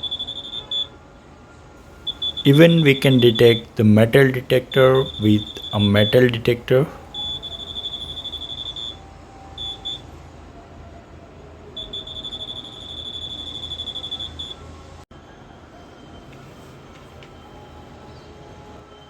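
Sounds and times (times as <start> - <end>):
metal detector pulsing beeps: 0.0 - 0.9, 2.1 - 9.0, 9.6 - 10.0, 11.8 - 14.6.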